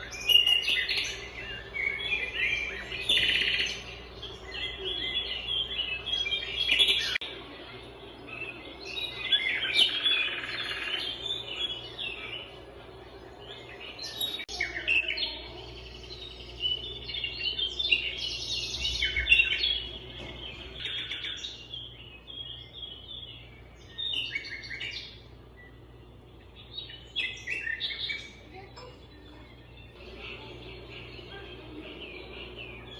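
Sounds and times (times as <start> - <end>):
small birds chirping: 0.0 - 32.9.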